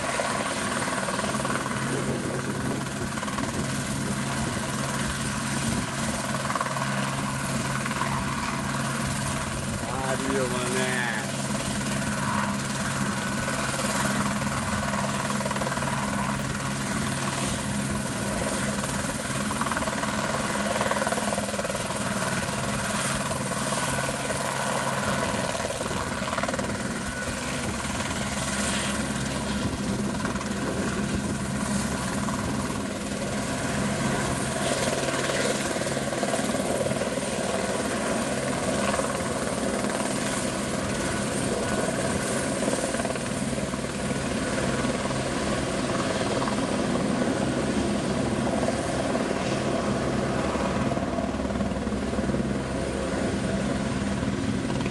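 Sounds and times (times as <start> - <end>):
helicopter engine and rotor drone: 0.0 - 54.9.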